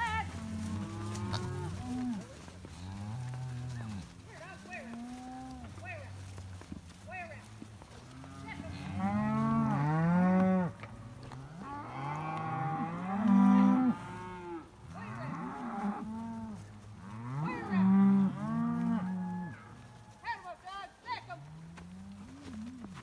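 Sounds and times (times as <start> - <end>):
cattle mooing: 0.0 - 4.0, 8.0 - 19.7.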